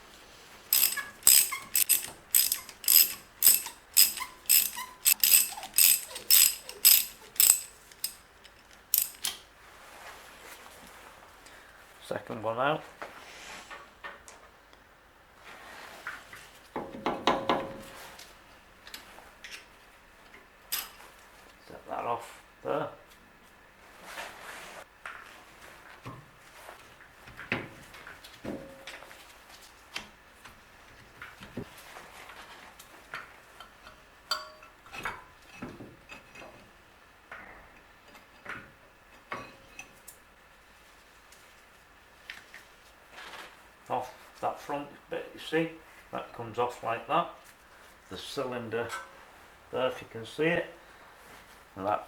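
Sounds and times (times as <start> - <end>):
metallic ring: 0.7 - 8.2, 9.0 - 9.3, 34.3 - 34.8
metal tools knocking: 0.7 - 9.4, 33.6 - 35.2.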